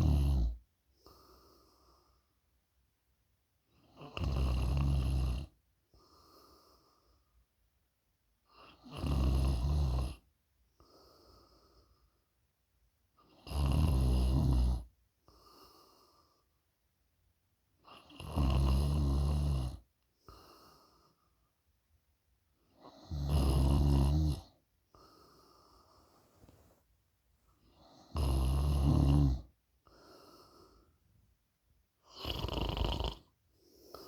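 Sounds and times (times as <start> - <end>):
person snoring loudly: 0.0 - 0.6, 4.0 - 5.5, 8.8 - 10.2, 13.4 - 14.8, 18.1 - 19.8, 23.1 - 24.5, 28.1 - 29.5, 32.1 - 33.3
soft breaths: 0.9 - 2.5, 10.7 - 12.4, 20.1 - 21.7, 24.5 - 28.1, 29.4 - 31.5, 33.1 - 34.0.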